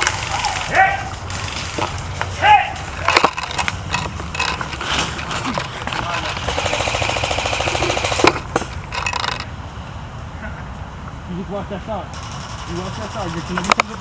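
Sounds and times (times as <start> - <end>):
sharp clicks: 3.0 - 9.5
airsoft gun full-auto burst: 6.4 - 8.5, 12.2 - 13.6.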